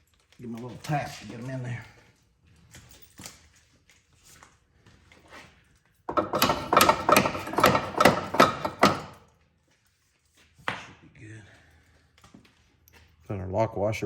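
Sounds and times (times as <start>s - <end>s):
hammer striking bolt: 6.1s - 9.2s
metal clatter: 6.1s - 9.2s.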